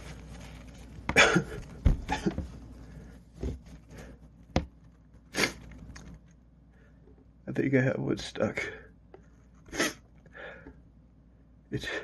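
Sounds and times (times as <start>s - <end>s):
man sniffing through nose: 5.3s - 5.6s, 9.7s - 10.0s.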